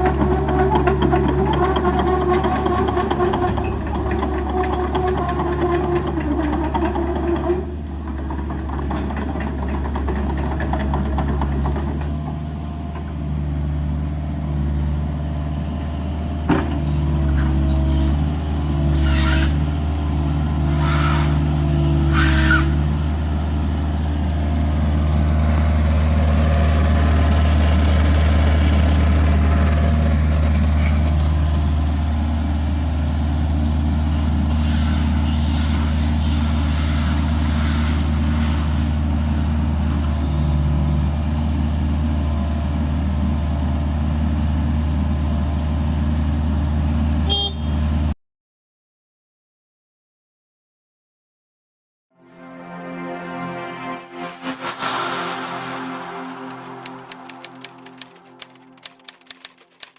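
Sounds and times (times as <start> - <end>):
diesel engine running: 0.0 - 48.1
pitched whine: 53.0 - 59.1.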